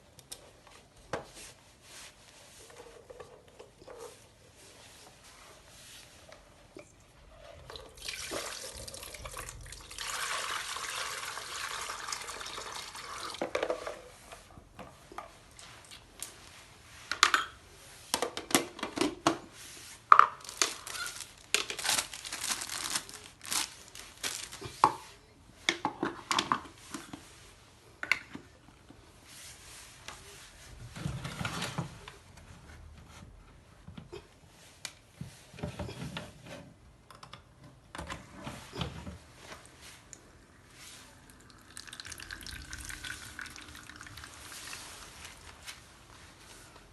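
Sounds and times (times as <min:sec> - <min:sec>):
water pouring in fountain: 0:41.4 - 0:45.0.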